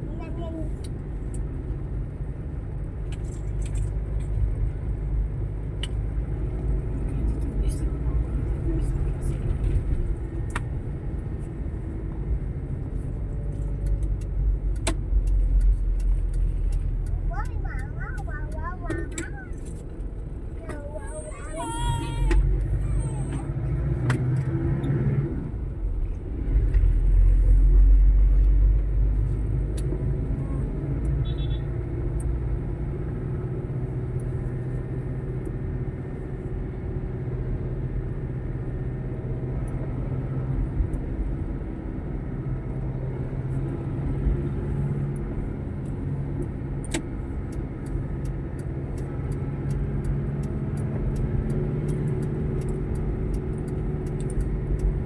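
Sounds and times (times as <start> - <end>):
vehicle engine running: 0.0 - 55.0.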